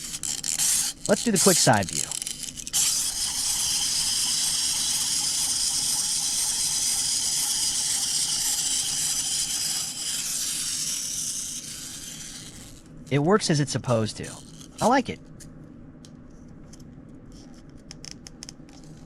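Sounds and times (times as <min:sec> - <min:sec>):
wind-up toy motor whirring: 0:00.0 - 0:12.9, 0:14.1 - 0:15.0.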